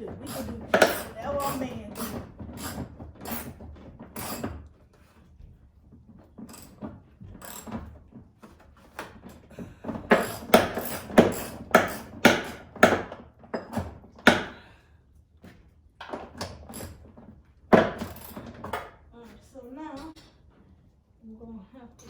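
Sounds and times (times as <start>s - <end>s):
hand ratchet strokes: 0.0s - 3.6s.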